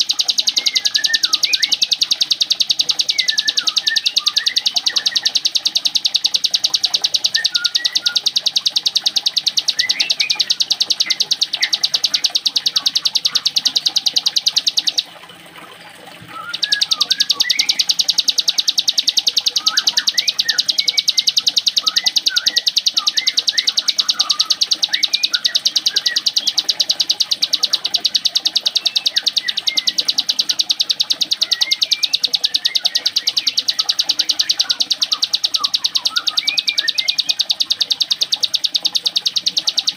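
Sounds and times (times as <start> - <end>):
songbird trilling: 0.0 - 15.1, 16.3 - 39.9.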